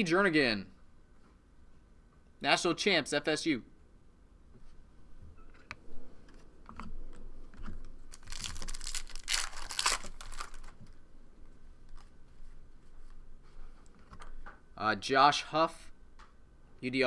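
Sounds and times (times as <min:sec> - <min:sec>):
foil wrapper crinkling: 0:08.0 - 0:11.0.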